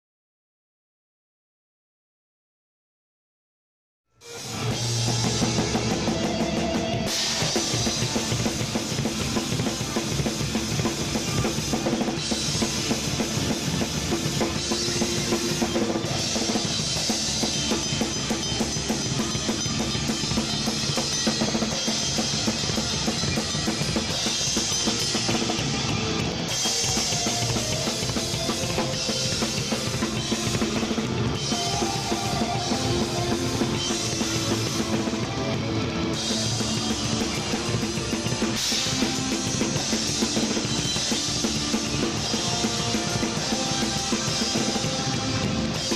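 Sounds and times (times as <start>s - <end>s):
drum kit playing: 4.2s - 45.9s
rock band playing live: 4.2s - 45.9s.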